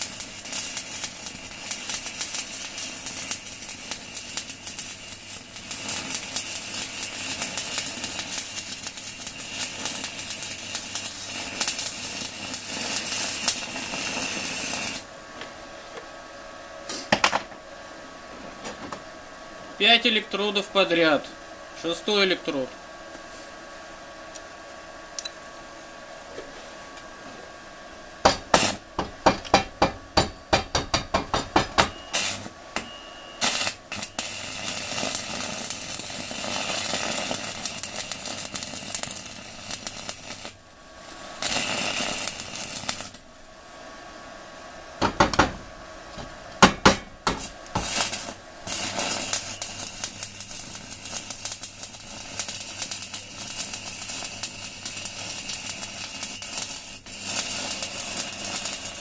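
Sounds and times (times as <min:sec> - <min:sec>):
welding arc crackling: 0:00.0 - 0:15.2, 0:28.1 - 0:43.5, 0:46.1 - 0:59.0.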